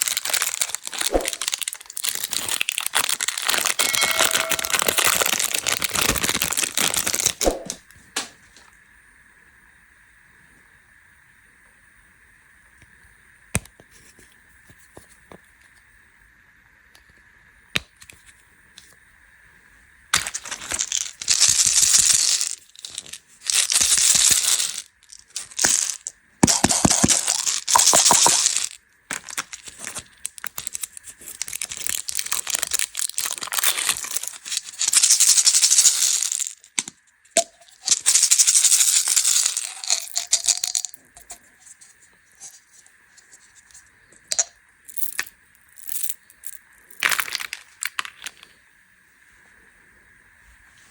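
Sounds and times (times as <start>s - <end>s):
candy packaging crinkling: 0.0s - 7.8s, 20.2s - 41.8s, 43.4s - 48.5s.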